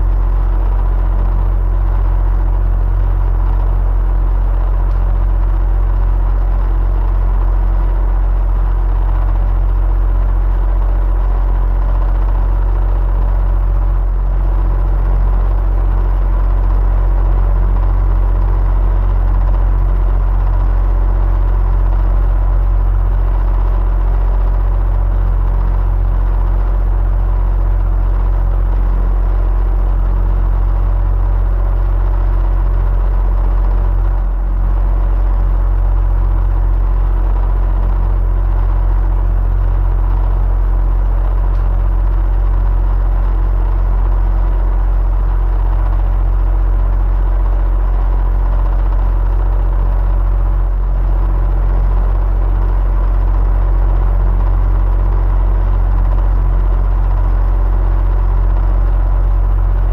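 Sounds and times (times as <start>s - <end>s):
electric fan humming: 0.0s - 43.2s, 59.6s - 59.9s.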